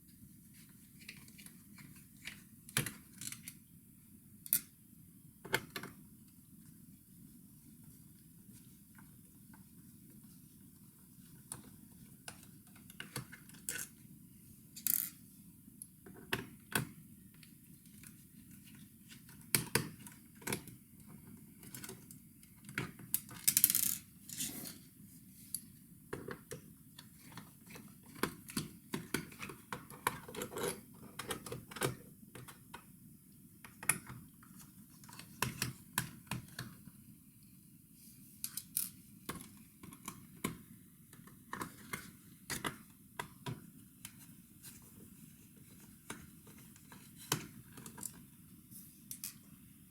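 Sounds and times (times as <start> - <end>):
small parts clicking and clinking: 14.8 - 15.2.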